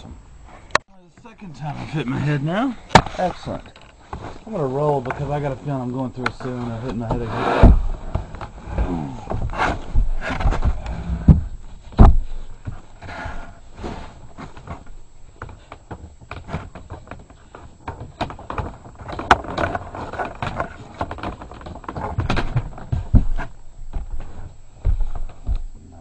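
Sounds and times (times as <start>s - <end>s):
tools knocking and scraping: 9.2s - 25.8s.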